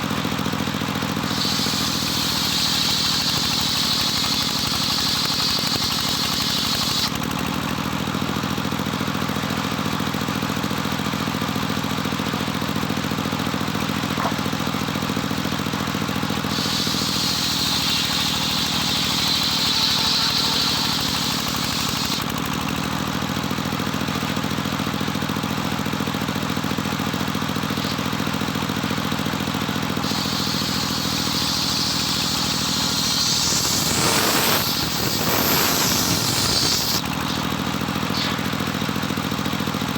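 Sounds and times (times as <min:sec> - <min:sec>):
sawmill engine running: 0:00.0 - 0:39.9
saw blade cutting hiss: 0:01.2 - 0:07.1, 0:16.4 - 0:22.2, 0:30.0 - 0:38.7.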